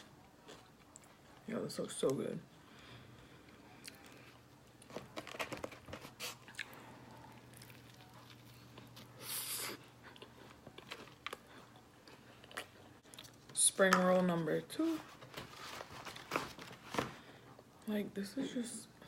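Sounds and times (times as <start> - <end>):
faint low hum: 0.0 - 19.0
person chewing crunchy food: 0.2 - 1.4, 3.7 - 13.5.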